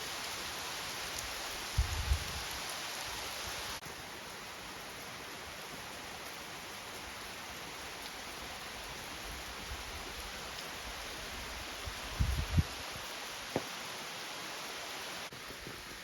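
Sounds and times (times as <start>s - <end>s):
steady rain falling: 0.0s - 16.0s.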